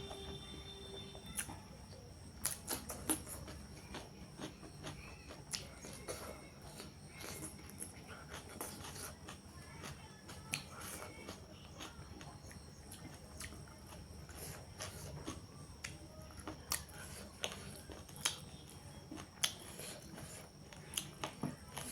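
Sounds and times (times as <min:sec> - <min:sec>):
wet chewing clicks and smacks: 0:02.4 - 0:10.7, 0:11.3 - 0:21.9.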